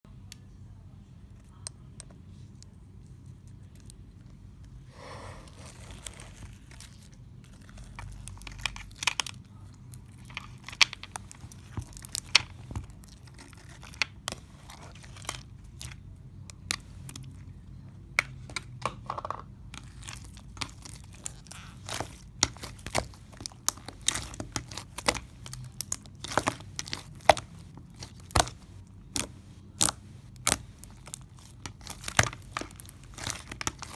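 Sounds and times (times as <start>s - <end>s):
crackling and crinkling handling: 2.4s - 19.0s, 19.7s - 33.9s
low steady hum: 19.5s - 33.9s.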